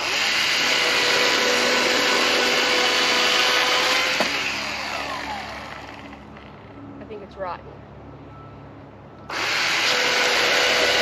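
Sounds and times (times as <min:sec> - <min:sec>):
chainsaw cutting wood: 0:00.0 - 0:06.2, 0:09.3 - 0:11.0.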